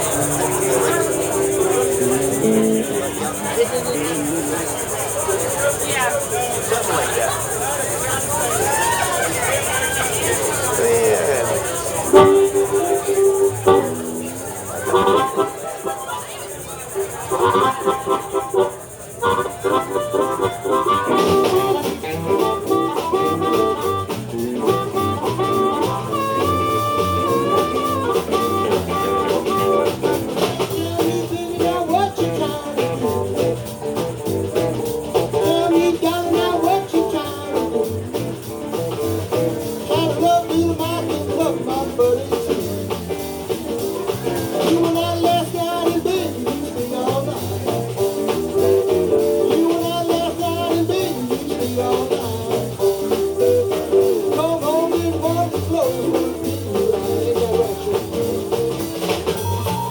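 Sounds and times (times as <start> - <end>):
lead instrument bent notes: 0.0 - 59.9
live blues band playing: 0.0 - 59.9.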